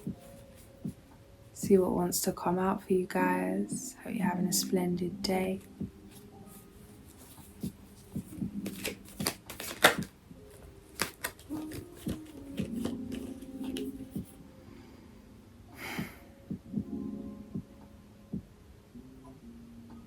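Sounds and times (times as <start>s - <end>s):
cards being shuffled: 7.1s - 14.1s.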